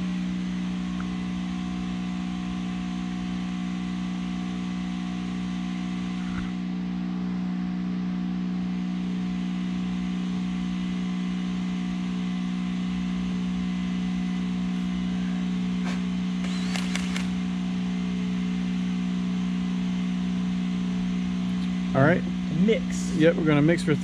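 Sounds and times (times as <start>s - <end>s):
air compressor humming: 15.8s - 17.4s.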